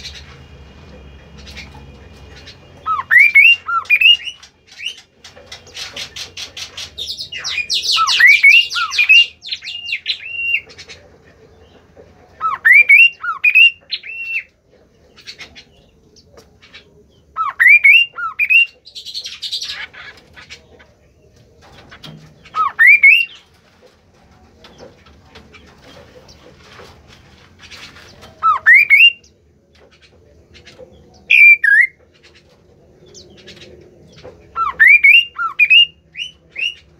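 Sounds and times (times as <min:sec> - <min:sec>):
songbird singing: 0:00.0 - 0:36.9.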